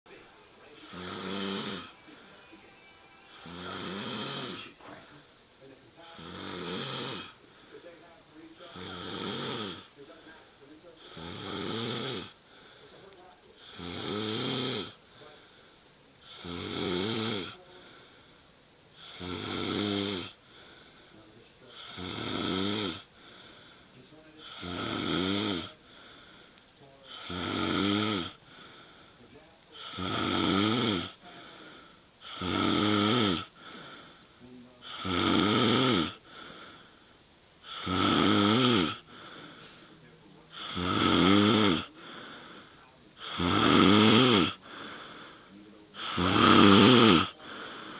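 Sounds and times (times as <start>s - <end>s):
breathy hiss: 0.1s - 47.9s
man snoring: 0.8s - 2.3s, 3.3s - 4.9s, 6.2s - 7.4s, 8.7s - 9.9s, 11.1s - 12.4s, 13.6s - 15.0s, 16.2s - 17.6s, 19.0s - 20.4s, 21.7s - 23.1s, 24.5s - 25.8s, 27.1s - 28.8s, 29.8s - 34.2s, 34.8s - 37.0s, 37.6s - 39.8s, 40.5s - 47.9s.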